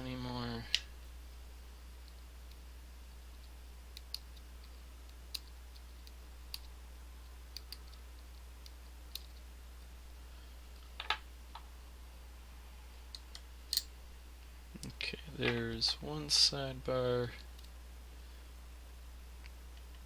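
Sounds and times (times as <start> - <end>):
small metal parts clicking: 8.6 - 9.5.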